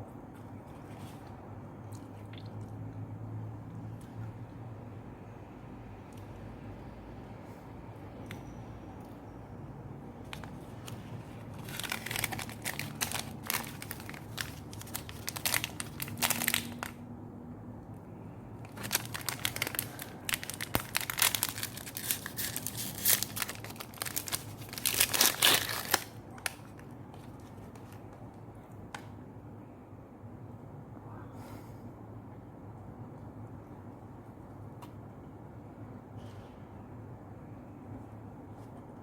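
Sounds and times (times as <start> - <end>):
crinkling and crunching: 10.2 - 17.0, 18.6 - 28.3.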